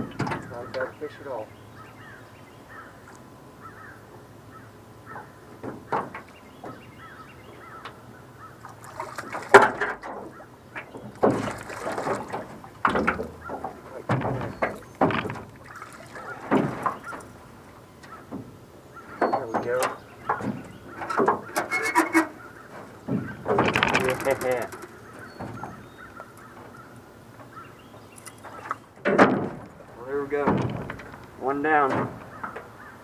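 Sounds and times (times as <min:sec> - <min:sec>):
knocks and bumps in boat: 0:00.0 - 0:01.4, 0:05.1 - 0:08.0, 0:08.8 - 0:33.0.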